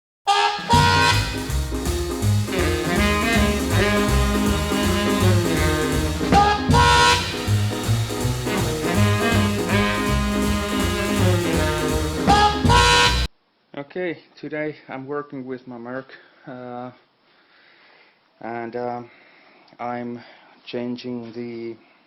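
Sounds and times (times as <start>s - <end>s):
upbeat swing jazz music: 0.3s - 13.3s.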